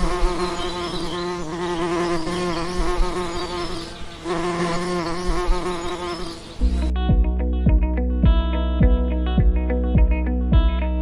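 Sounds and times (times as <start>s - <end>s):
honeybees buzzing: 0.0s - 6.9s.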